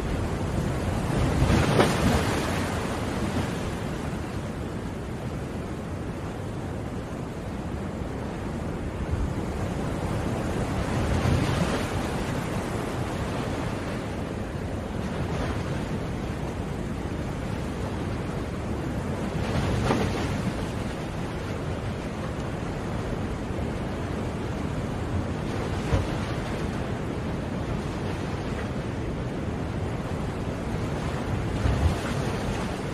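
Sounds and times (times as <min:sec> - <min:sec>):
ocean waves breaking: 0:00.0 - 0:05.2, 0:08.6 - 0:32.9.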